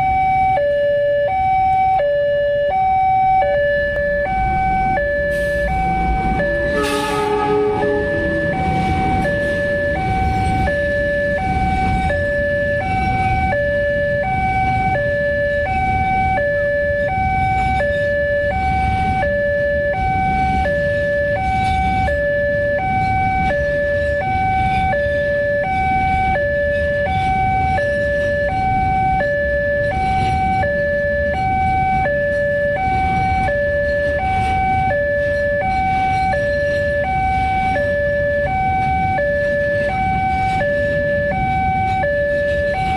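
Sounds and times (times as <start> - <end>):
level crossing two-tone alarm: 0.0 - 26.7, 27.3 - 42.9
low rumble: 5.4 - 11.0.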